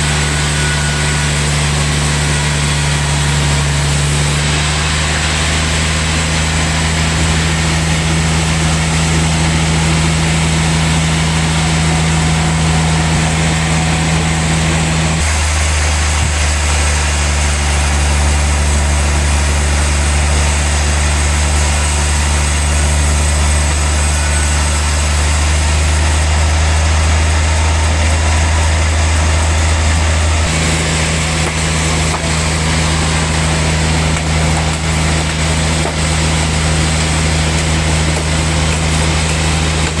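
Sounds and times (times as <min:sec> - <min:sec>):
sawmill machine sawing log: 0:00.0 - 0:40.0.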